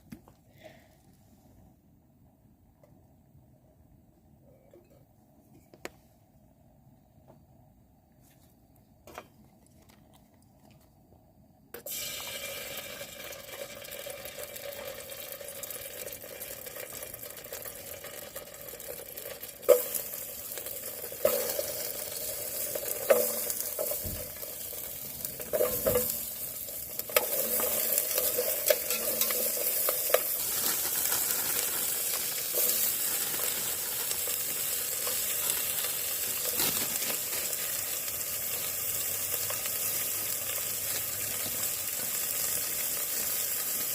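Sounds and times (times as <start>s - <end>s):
food sizzling in a frying pan: 11.9s - 43.9s.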